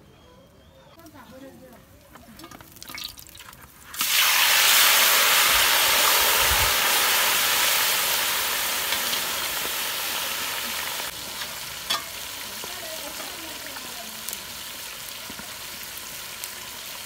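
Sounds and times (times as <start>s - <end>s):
food sizzling in a hot pan: 3.9s - 17.0s.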